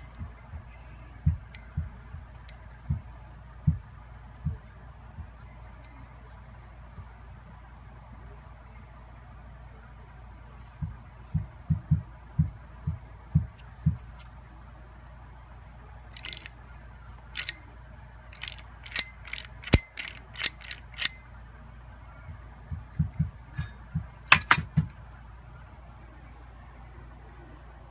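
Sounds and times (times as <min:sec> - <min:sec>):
sharp metallic clicks: 0:16.2 - 0:16.5, 0:17.4 - 0:17.6, 0:18.4 - 0:21.2, 0:24.3 - 0:24.7
dull knocks of case handling: 0:24.3 - 0:25.0.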